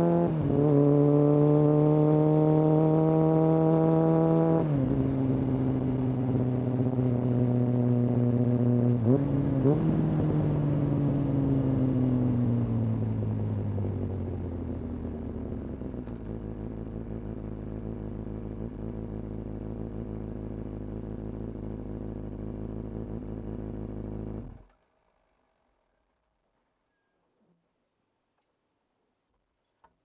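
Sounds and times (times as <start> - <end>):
motorcycle engine idling: 8.2 - 24.6.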